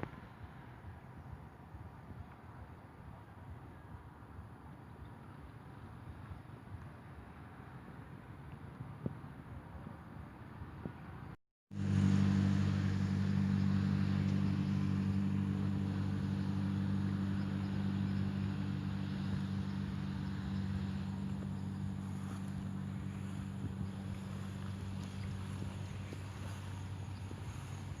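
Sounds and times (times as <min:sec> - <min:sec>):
engine running steadily: 0:11.0 - 0:28.0.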